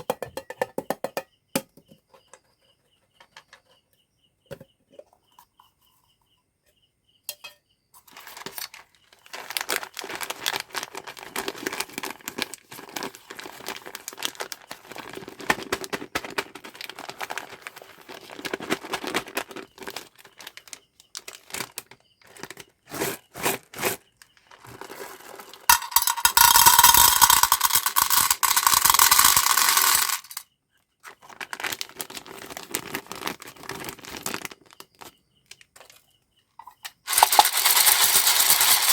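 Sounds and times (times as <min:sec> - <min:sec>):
candy wrappers crinkling: 0:08.1 - 0:30.4, 0:31.0 - 0:35.1, 0:37.1 - 0:38.9.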